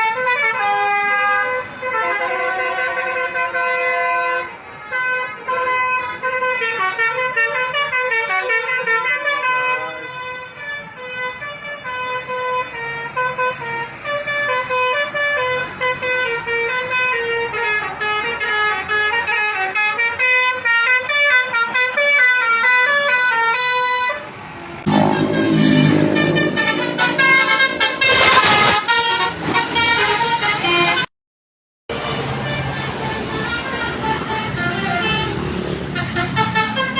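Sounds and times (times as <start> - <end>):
bus air horn melody: 0.0 - 31.1, 31.9 - 36.9
loud deep noise: 24.6 - 30.0.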